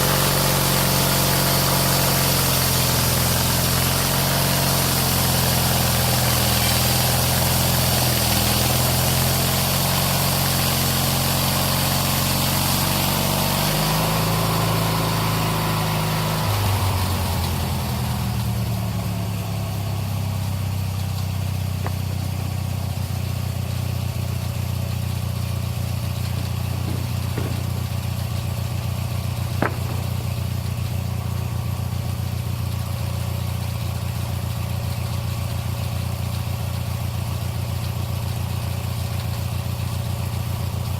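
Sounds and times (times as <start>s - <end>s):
lawn mower engine running: 0.0s - 37.7s
loud hiss: 25.1s - 32.3s.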